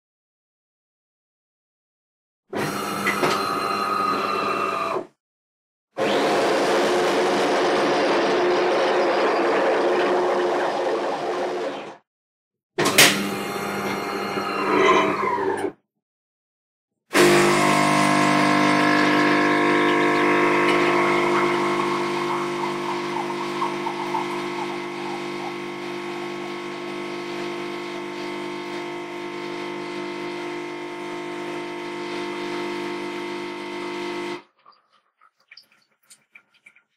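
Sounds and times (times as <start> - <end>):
coffee machine humming: 6.2 - 11.8, 17.2 - 34.5.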